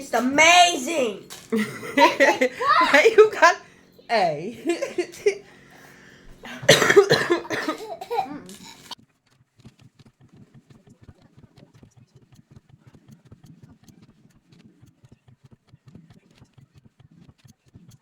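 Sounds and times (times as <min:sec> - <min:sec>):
child laughing and squealing: 0:02.0 - 0:03.6.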